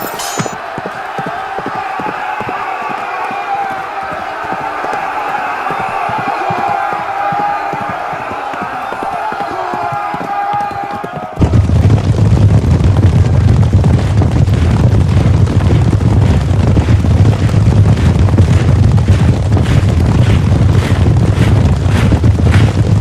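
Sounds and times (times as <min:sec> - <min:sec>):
battle din rumble with crackles: 0:00.4 - 0:23.0
men shouting a war cry: 0:00.6 - 0:11.4.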